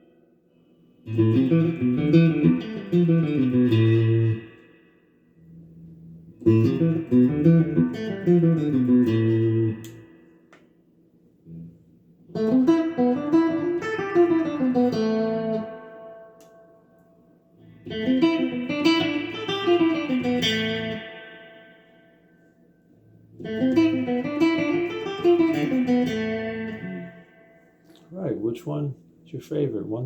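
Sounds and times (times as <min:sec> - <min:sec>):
guitar picked phrase: 0:23.5 - 0:27.2.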